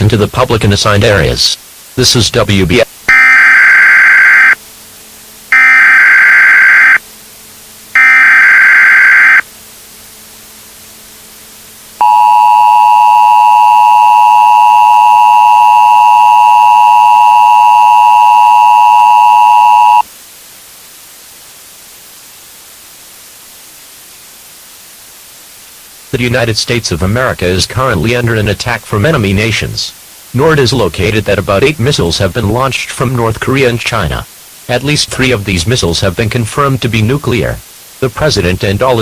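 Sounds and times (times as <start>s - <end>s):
low steady hiss: 0.0s - 39.0s
harsh digital data bursts: 3.1s - 4.6s, 5.5s - 7.0s, 8.0s - 9.4s
two-tone attention signal: 3.1s - 4.6s, 5.5s - 7.0s, 8.0s - 9.4s, 12.0s - 20.0s.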